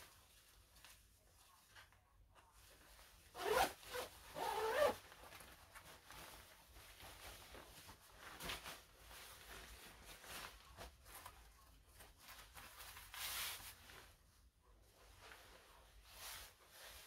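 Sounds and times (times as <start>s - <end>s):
fabric handling: 0.0s - 17.0s
zipper being drawn: 3.3s - 5.0s.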